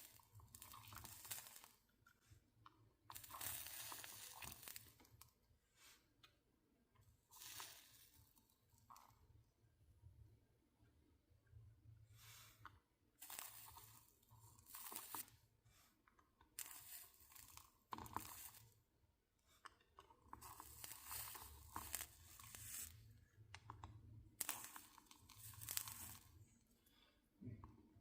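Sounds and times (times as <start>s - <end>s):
solder sizzling: 0.0s - 2.0s, 3.1s - 5.2s, 7.2s - 9.0s, 13.2s - 15.6s, 16.5s - 18.9s, 20.3s - 23.6s, 24.3s - 26.7s.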